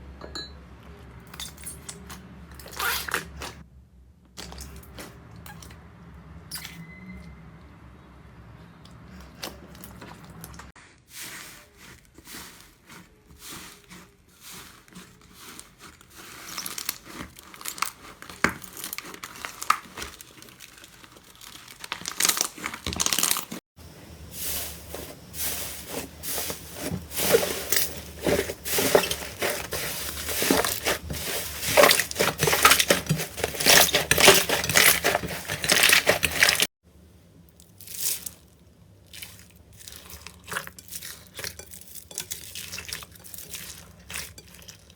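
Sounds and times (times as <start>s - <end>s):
slime crackling and popping: 15.4s - 23.6s.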